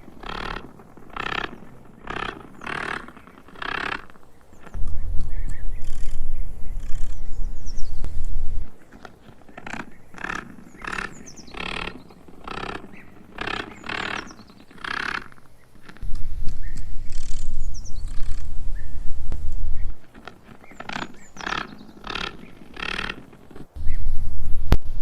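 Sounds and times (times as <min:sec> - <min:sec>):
loud low rumble: 0:04.8 - 0:08.8.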